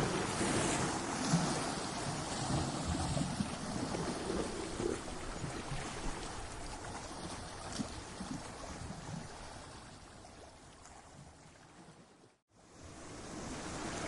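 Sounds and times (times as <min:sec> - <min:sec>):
surf rushing against rocks: 0:00.0 - 0:08.1.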